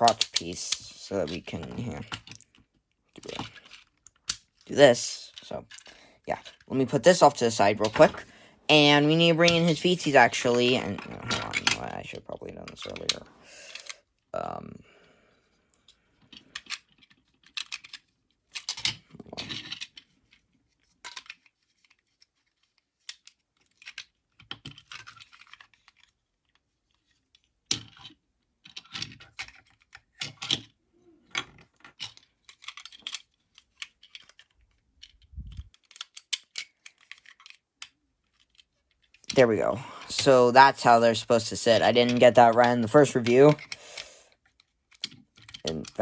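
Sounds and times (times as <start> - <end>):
plastic action figure clicking: 0.0 - 2.5.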